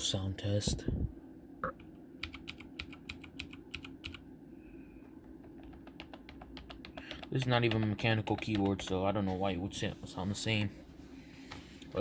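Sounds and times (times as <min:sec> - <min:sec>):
clicky mechanical keyboard typing: 0:02.2 - 0:04.2, 0:05.4 - 0:09.2.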